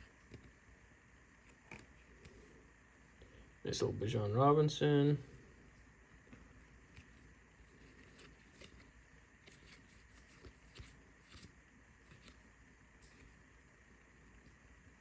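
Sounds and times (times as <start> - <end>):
trading cards clicking and sliding: 1.4 - 2.6, 6.3 - 13.5.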